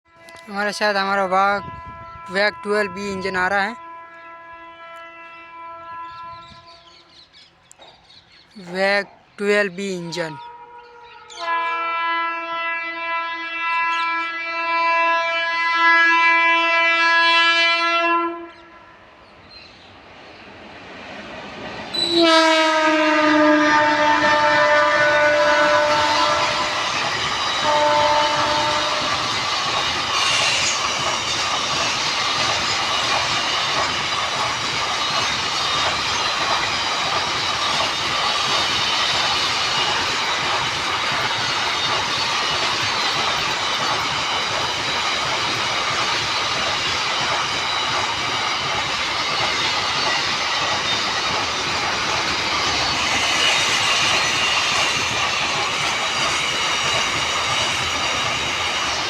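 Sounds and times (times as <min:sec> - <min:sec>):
two-tone locomotive horn blast: 0:00.1 - 0:07.1, 0:10.4 - 0:19.1, 0:21.9 - 0:27.0, 0:27.6 - 0:29.4
train rumbling past: 0:00.1 - 0:59.0.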